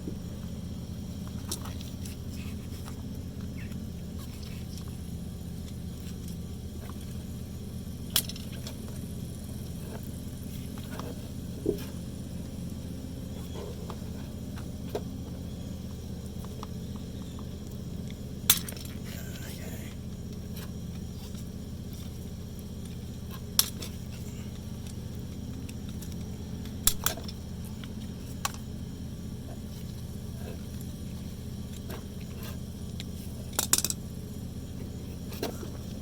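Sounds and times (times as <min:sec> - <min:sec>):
steady low hum: 0:00.0 - 0:36.0
sharp clicks and light knocks: 0:24.8 - 0:28.7.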